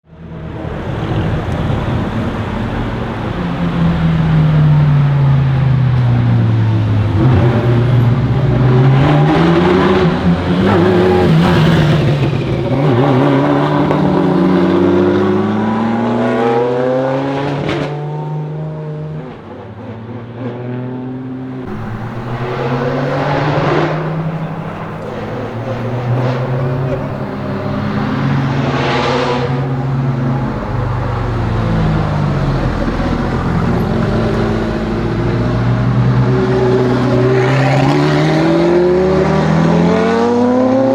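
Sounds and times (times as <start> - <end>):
sports car engine revving: 0.8 - 18.6, 21.7 - 40.9
exhaust crackles: 9.5 - 14.3, 21.7 - 37.2.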